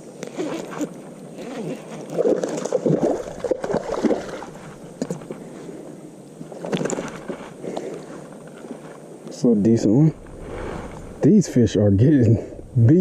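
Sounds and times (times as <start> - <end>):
creek water splashing: 2.0 - 8.9.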